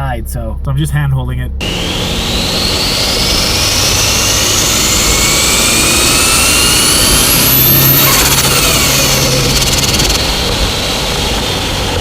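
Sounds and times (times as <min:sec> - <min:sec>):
car engine running: 0:00.0 - 0:12.0
turbocharger whine: 0:01.4 - 0:12.0
fast fluttering pulse: 0:01.6 - 0:11.2.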